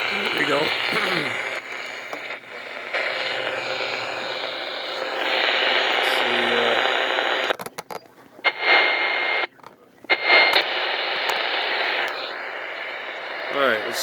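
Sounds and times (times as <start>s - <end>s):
radio clicks: 0.0s - 14.0s
radio static hiss: 0.0s - 14.0s.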